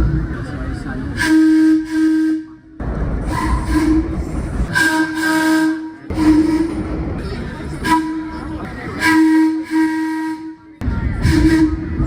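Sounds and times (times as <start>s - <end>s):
low rumble: 0.0s - 1.9s, 2.5s - 9.1s, 10.8s - 12.0s
vehicle horn blasts: 3.3s - 6.8s, 7.8s - 11.9s.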